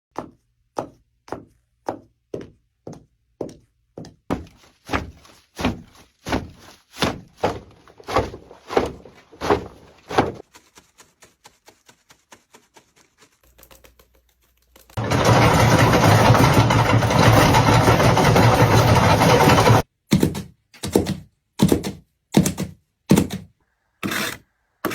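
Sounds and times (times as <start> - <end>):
foley thumps: 4.0 - 10.4, 15.0 - 23.5.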